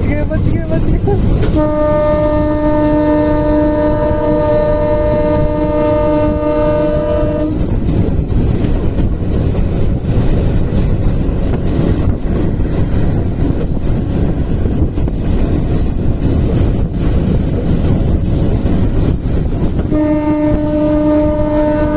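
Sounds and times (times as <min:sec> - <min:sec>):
moving train rumble: 0:00.0 - 0:21.9
train horn chord: 0:01.4 - 0:07.7, 0:19.8 - 0:21.9.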